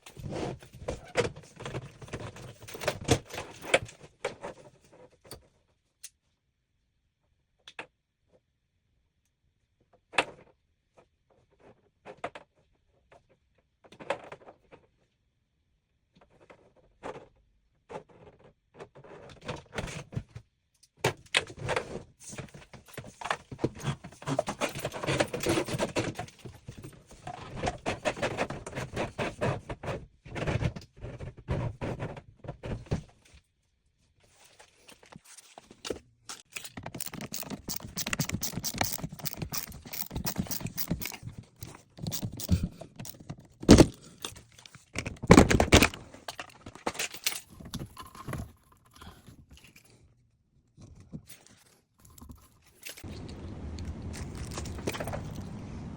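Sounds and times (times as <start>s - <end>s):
knocks and rattling of hand work: 36.4s - 48.6s.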